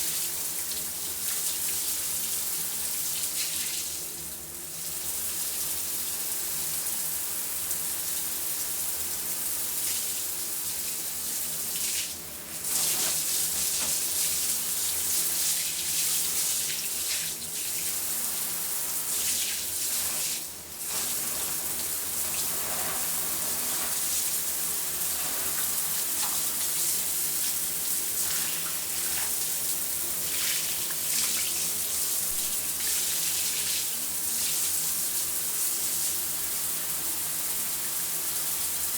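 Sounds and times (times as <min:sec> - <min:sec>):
shower water spraying: 0:09.2 - 0:38.9.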